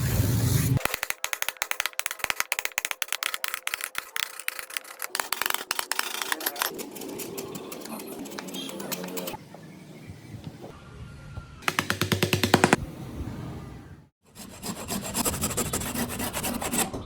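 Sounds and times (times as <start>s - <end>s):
rapid sharp clicks and taps: 0.8s - 4.3s, 11.6s - 12.8s.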